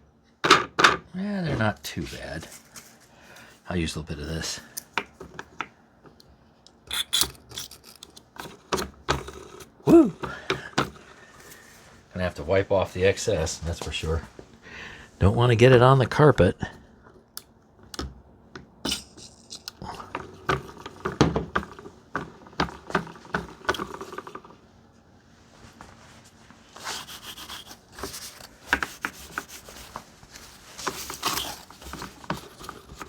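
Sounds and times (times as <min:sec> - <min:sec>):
plastic parts clicking and knocking: 0:00.4 - 0:01.0, 0:04.8 - 0:11.0, 0:17.1 - 0:24.6, 0:30.8 - 0:33.0
cloth rubbing on plastic: 0:25.3 - 0:33.0.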